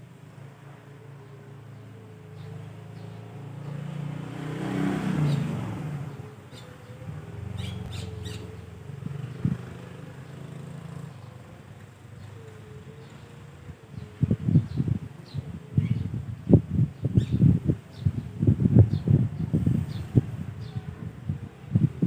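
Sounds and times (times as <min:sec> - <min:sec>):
high bird chirps: 0:07.6 - 0:08.6.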